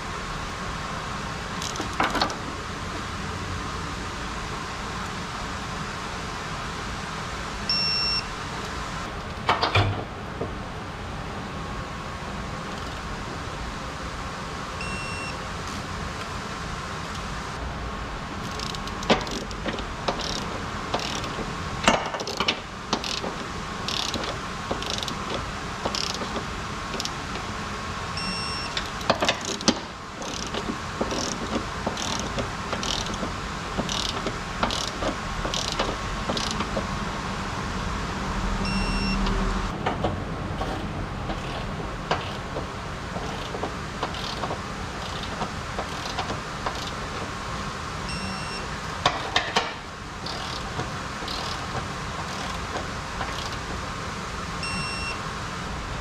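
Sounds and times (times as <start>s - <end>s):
steady hum: 0.0s - 56.0s
short high beep: 7.7s - 8.3s, 14.8s - 15.4s, 38.7s - 39.2s, 48.1s - 48.6s.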